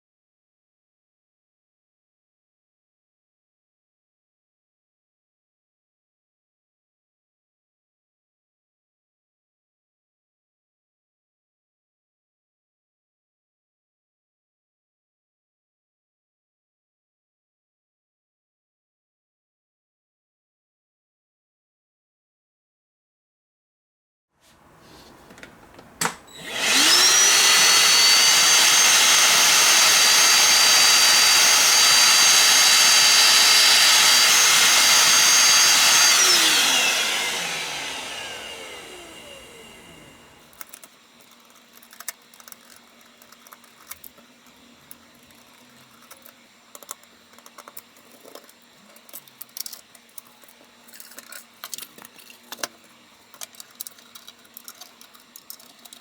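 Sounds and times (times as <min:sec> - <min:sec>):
electric motor whining: 0:26.3 - 0:56.0.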